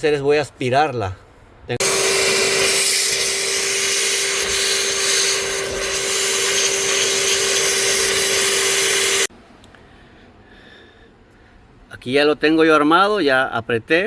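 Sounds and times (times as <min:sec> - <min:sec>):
vacuum cleaner running: 0:01.8 - 0:09.3.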